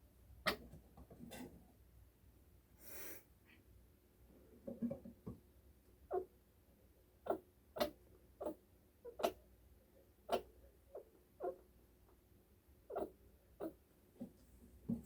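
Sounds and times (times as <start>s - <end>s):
animal hiccuping: 7.2s - 9.4s, 10.3s - 11.6s, 12.9s - 13.8s.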